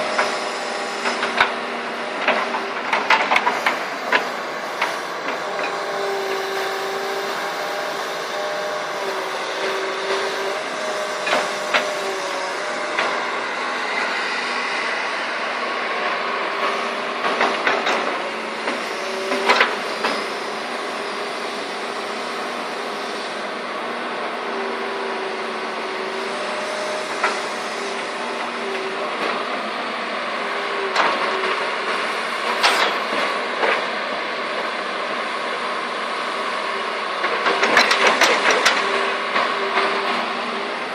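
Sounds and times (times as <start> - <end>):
excavator running: 0.0 - 40.9
whine shifting in pitch: 3.5 - 17.1.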